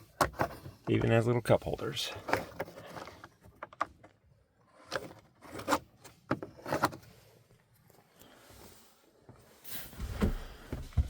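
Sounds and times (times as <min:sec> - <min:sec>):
handling noise scrapes: 0:02.2 - 0:03.5, 0:04.6 - 0:10.7.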